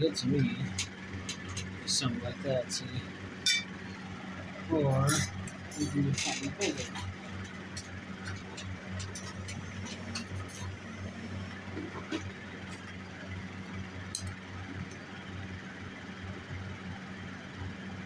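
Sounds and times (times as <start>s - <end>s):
low hum: 0.0s - 15.2s.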